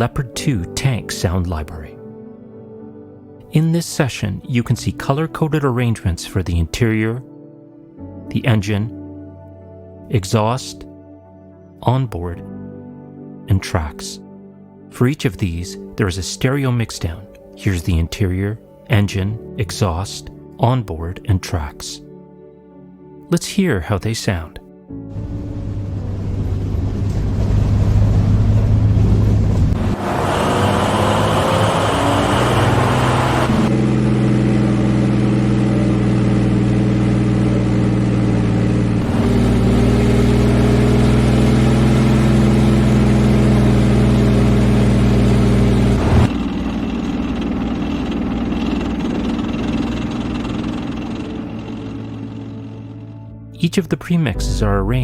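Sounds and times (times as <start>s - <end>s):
tank diesel engine drone: 25.1s - 53.3s.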